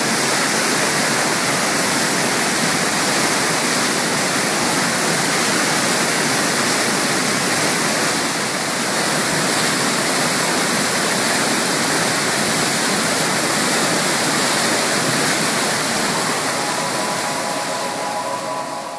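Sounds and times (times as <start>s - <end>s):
waterfall rushing: 13.7s - 18.9s.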